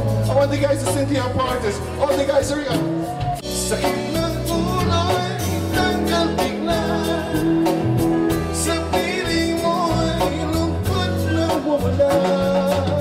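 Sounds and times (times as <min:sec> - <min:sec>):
live pop band: 0:00.0 - 0:13.0
person singing: 0:02.7 - 0:13.0.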